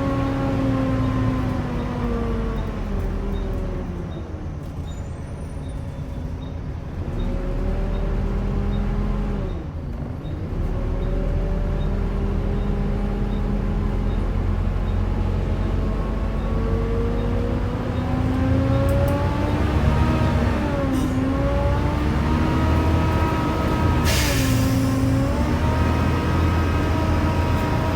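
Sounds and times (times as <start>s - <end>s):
bus diesel engine whining drone: 6.9s - 27.9s.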